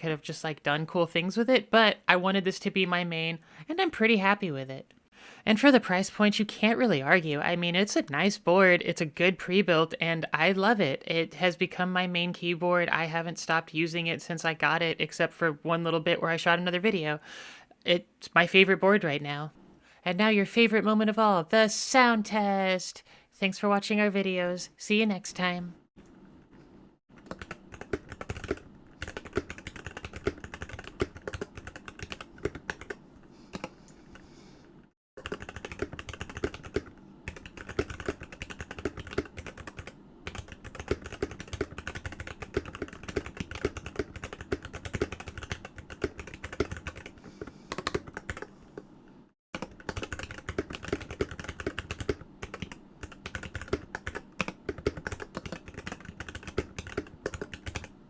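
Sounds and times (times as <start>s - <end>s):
mechanical keyboard typing: 27.2s - 33.0s, 35.2s - 48.5s, 49.6s - 57.9s.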